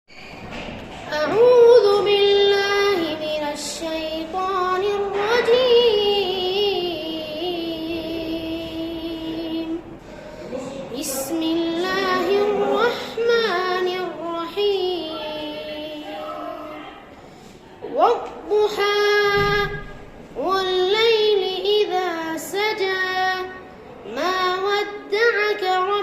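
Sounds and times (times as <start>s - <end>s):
child chanting recitation: 1.0s - 17.1s, 17.7s - 26.0s.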